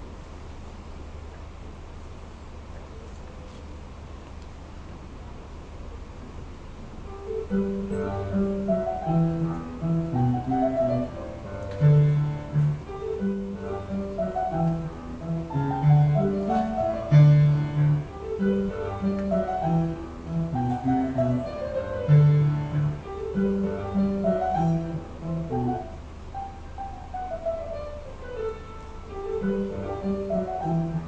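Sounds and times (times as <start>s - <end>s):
instrumental music with piano and strings: 7.0s - 31.0s.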